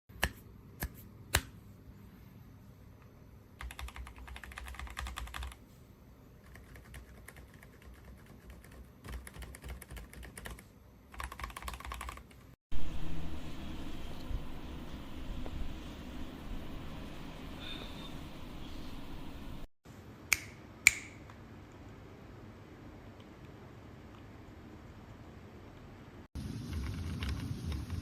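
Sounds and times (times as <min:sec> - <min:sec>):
keyboard typing: 0:03.6 - 0:05.6, 0:06.4 - 0:12.6, 0:26.8 - 0:27.9
steady noise: 0:12.7 - 0:19.7.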